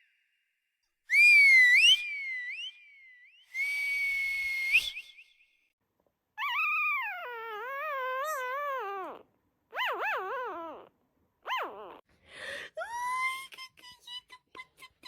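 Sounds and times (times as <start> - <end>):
held whistle note: 1.1 - 5.6
slide whistle glides: 1.1 - 5.6.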